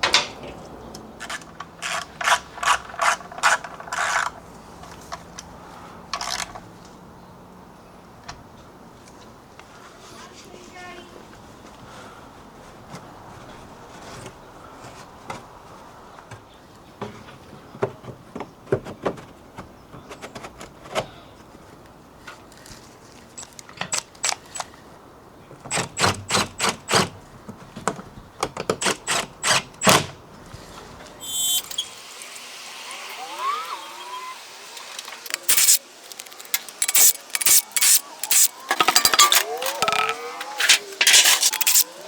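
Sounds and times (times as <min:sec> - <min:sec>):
tools clicking on metal: 0:35.3 - 0:41.9.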